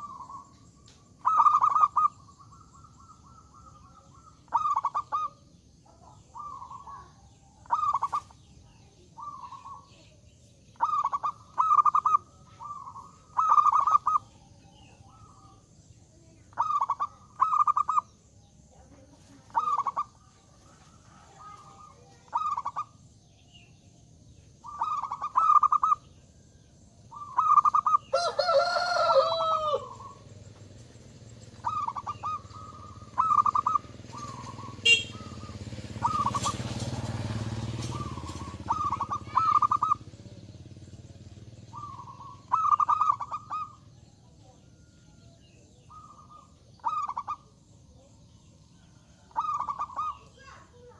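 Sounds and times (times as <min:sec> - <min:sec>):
bird singing: 0:00.0 - 0:50.9
doves cooing: 0:00.0 - 0:50.9
rooster crowing: 0:28.1 - 0:30.2.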